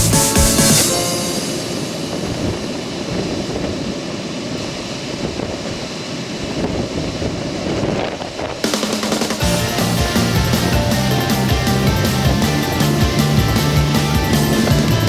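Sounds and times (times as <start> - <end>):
wind buffeting microphone: 2.1 - 8.7.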